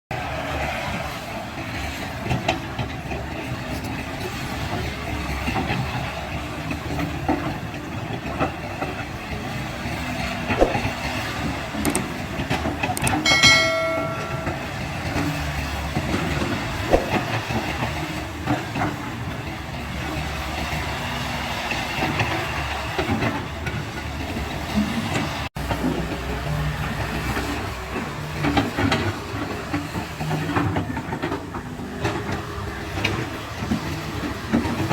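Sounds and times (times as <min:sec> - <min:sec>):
metallic clanks from tracks and bucket: 0:13.3 - 0:15.0.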